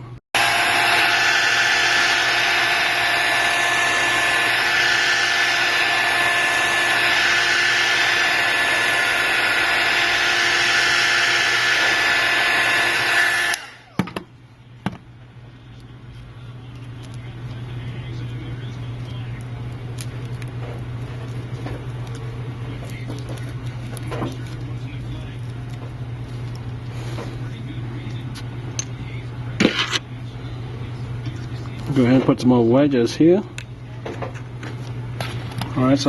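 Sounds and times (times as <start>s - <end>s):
heat gun blowing with fan whine: 0.4s - 14.2s.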